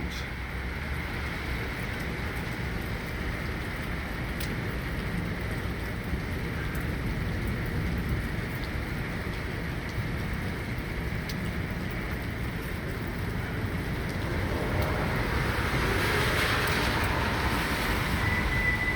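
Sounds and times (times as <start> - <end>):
sharp raindrop ticks: 1.0 - 18.9
heavy rain hissing: 13.4 - 18.9.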